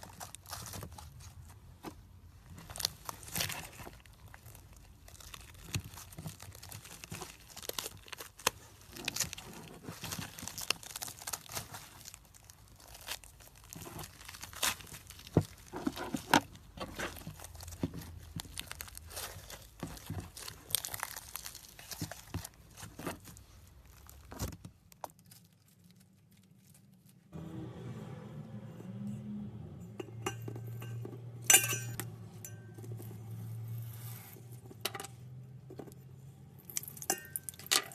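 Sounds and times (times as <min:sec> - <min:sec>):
slime stress ball crackling and tearing: 0:00.0 - 0:27.3, 0:32.9 - 0:34.7.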